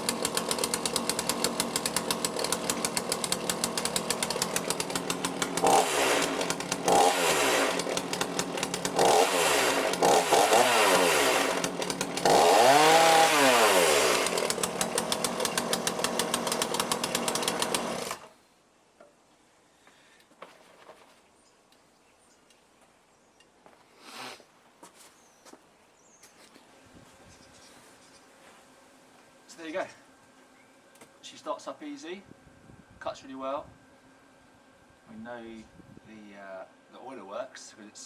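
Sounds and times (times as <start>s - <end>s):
chainsaw engine idling and revving: 0.0s - 18.3s.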